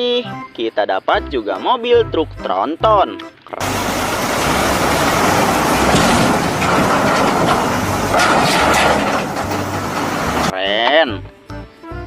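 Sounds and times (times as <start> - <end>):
low hum: 3.6 - 10.5
vehicle rumbling and rattling: 3.6 - 10.6.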